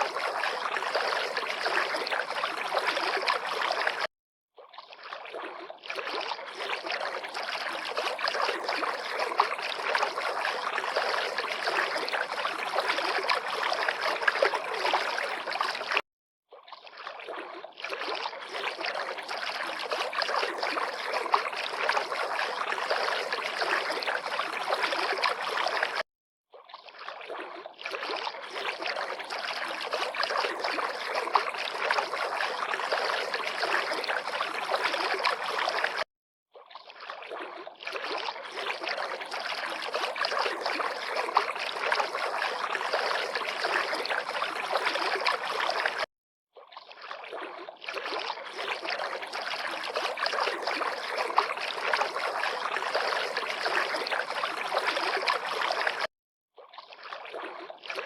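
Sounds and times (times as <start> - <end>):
river water flowing: 0.0 - 4.0.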